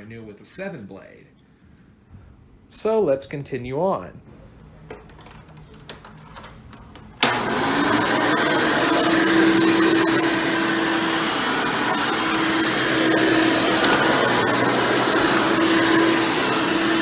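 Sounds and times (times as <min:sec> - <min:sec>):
upright vacuum cleaner running: 0:06.9 - 0:17.0.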